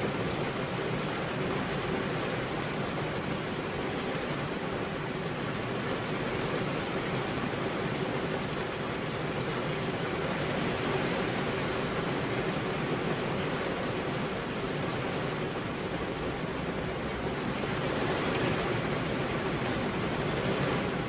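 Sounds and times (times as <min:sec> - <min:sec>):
heavy rain on a road: 0:00.0 - 0:21.0.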